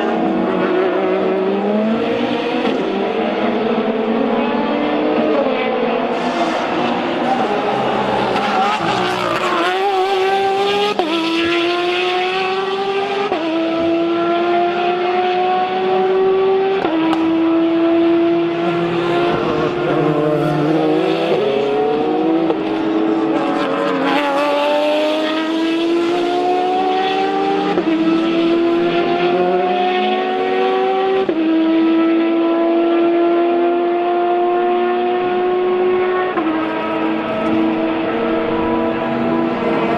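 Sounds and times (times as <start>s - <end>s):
race car engine at full throttle: 0.0s - 39.9s.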